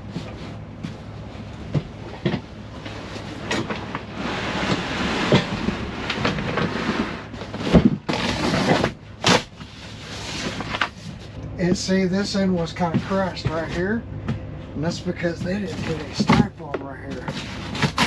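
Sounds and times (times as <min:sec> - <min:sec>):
scraping and rustling: 0:02.2 - 0:11.4, 0:15.2 - 0:18.0.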